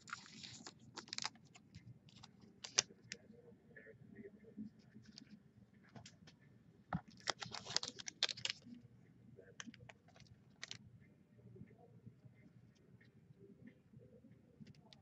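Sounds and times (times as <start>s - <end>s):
cards being handled clicking: 0.0s - 2.9s, 7.0s - 8.7s, 9.6s - 10.8s.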